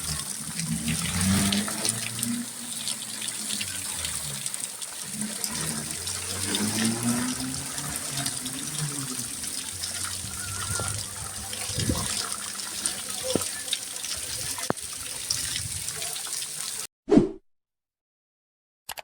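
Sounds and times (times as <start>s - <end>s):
heavy rain falling: 0.0s - 16.8s
water running and splashing: 0.0s - 16.9s.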